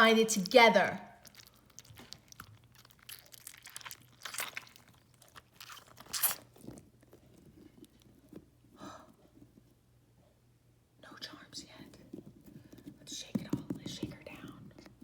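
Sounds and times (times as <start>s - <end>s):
crunching rustles of toy filling: 1.2s - 7.8s.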